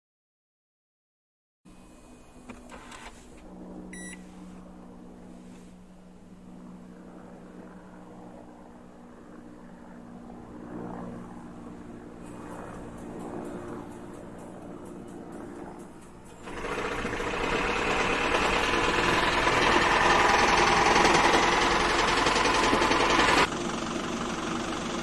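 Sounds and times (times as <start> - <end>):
short electronic beep: 4.0 - 4.2
car low hum: 16.2 - 25.0.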